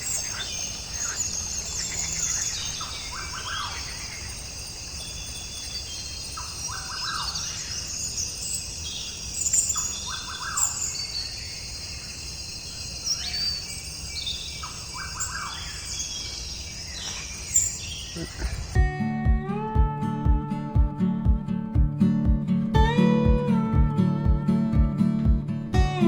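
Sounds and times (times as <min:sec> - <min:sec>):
high twittering calls: 0:00.0 - 0:19.2
birds chirping: 0:00.0 - 0:26.0.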